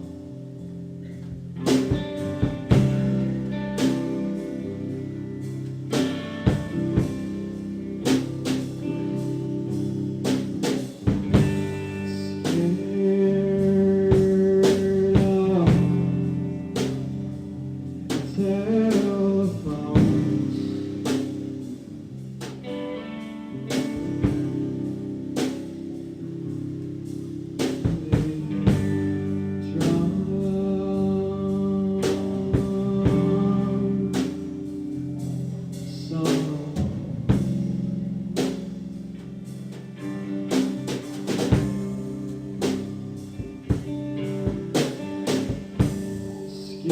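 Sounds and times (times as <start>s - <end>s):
amplified electric guitars: 0.0s - 46.9s
drum kit: 0.0s - 46.9s
person singing: 11.3s - 17.3s, 18.0s - 24.8s, 27.8s - 38.5s, 43.7s - 46.9s.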